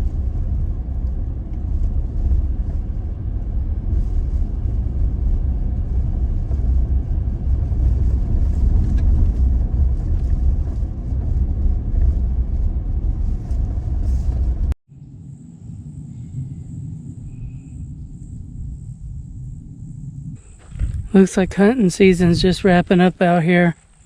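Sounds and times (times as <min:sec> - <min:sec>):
faint ticks and rattles: 0:00.0 - 0:14.7
pickup truck driving rumble: 0:00.0 - 0:14.8.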